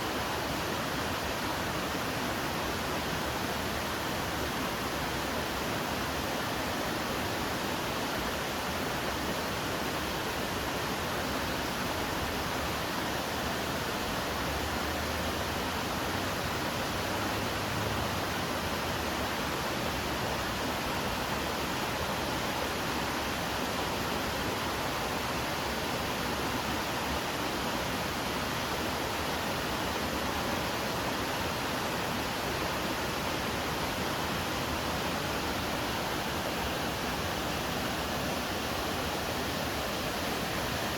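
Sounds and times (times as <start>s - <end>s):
waterfall rushing: 0.0s - 40.9s.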